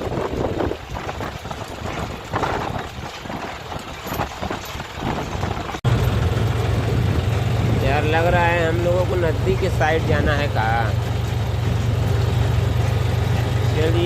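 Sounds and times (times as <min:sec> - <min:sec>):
engine running: 0:00.0 - 0:14.0
wind buffeting microphone: 0:00.0 - 0:14.0
low engine drone: 0:05.8 - 0:14.0.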